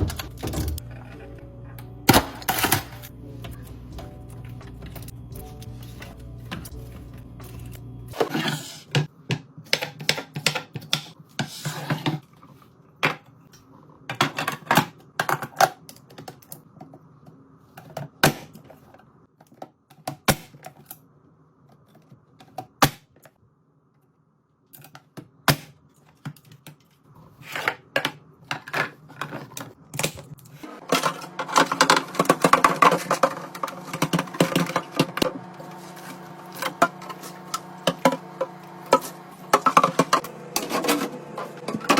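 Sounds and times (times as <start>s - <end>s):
containers and lids clicking: 28.0s - 41.9s.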